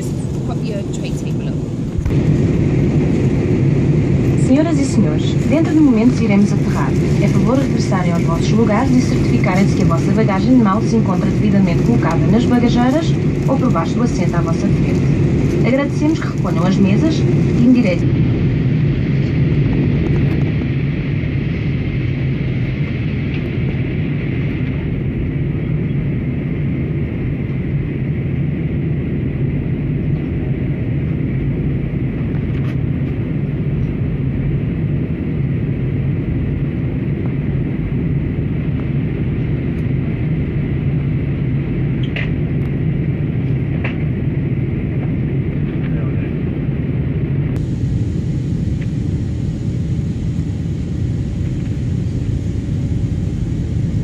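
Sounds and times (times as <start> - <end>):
airliner engines and airflow rumble: 0.0 - 54.0.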